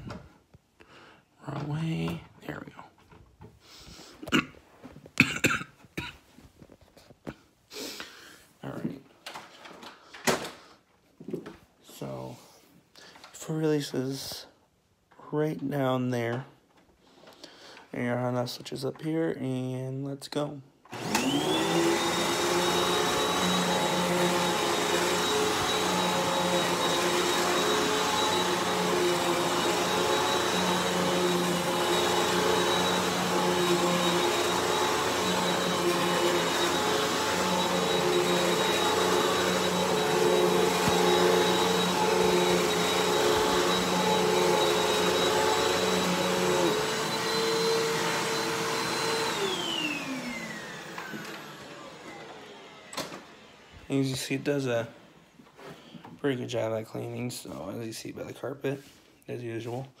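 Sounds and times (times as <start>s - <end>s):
vacuum cleaner on carpet: 20.9s - 55.7s.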